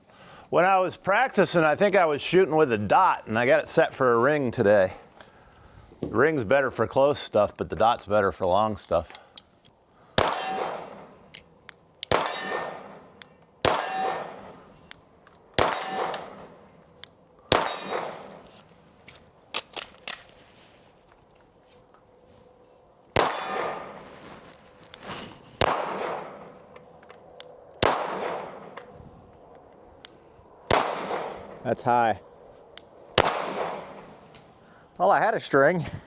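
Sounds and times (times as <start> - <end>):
steel target ringing: 10.2 - 11.1, 12.1 - 13.0, 13.7 - 14.5, 15.6 - 16.6, 17.6 - 18.3, 23.2 - 23.9
pistol shots: 10.2 - 11.3, 12.0 - 14.6, 15.5 - 16.6, 17.5 - 18.5, 23.2 - 24.0, 25.6 - 26.9, 27.8 - 28.9, 30.7 - 31.6, 33.2 - 34.1.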